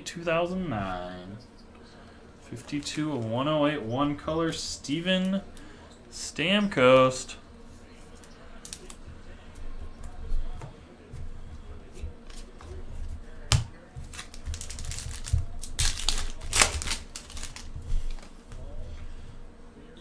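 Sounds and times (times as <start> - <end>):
cards sliding and shuffling: 7.6 - 9.1, 11.5 - 18.6
pack crinkling: 8.0 - 9.0, 12.2 - 18.8.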